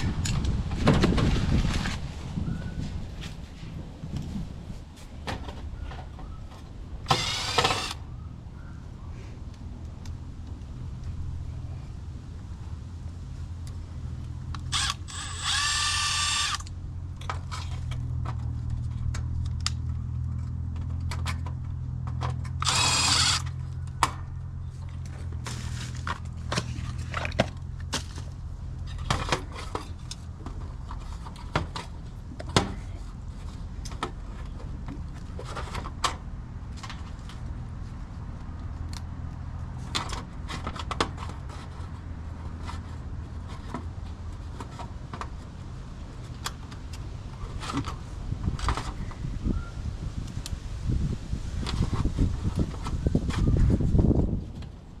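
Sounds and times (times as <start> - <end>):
power drill whirring: 7.1 - 8.0, 14.7 - 16.7, 22.6 - 23.6.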